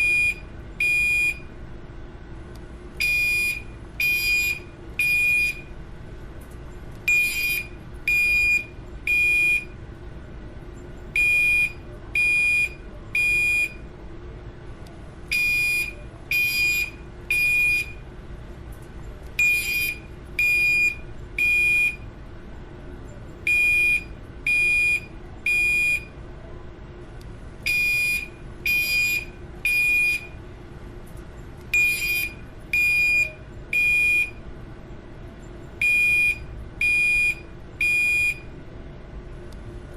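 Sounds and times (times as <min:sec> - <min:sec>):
fire alarm beeping: 0:00.0 - 0:01.6, 0:03.0 - 0:05.7, 0:07.1 - 0:09.8, 0:11.1 - 0:13.9, 0:15.3 - 0:18.0, 0:19.4 - 0:22.1, 0:23.4 - 0:26.2, 0:27.6 - 0:30.4, 0:31.7 - 0:34.4, 0:35.8 - 0:38.6.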